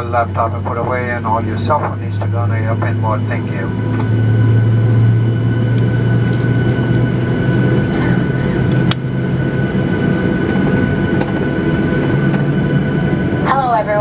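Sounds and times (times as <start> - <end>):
airplane cabin rushing noise: 0.0 - 14.0
low hum: 0.0 - 14.0.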